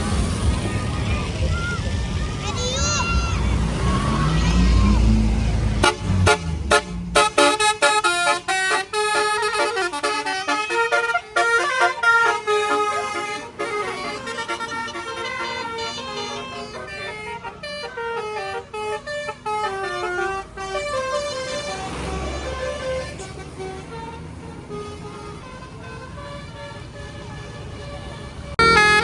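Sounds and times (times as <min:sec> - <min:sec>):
bus musical horn playing a tune: 0:04.0 - 0:29.0.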